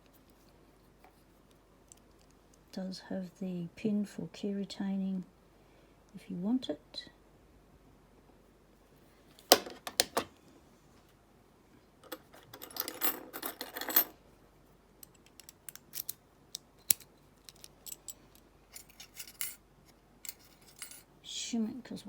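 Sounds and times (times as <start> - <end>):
padlock clicking and rattling: 15.0 - 18.2.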